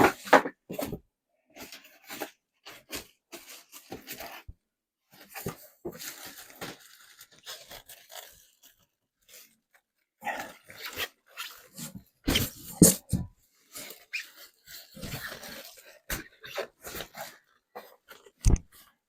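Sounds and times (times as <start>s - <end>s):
packaging scraping and crunching: 5.3s - 9.5s, 10.4s - 18.4s.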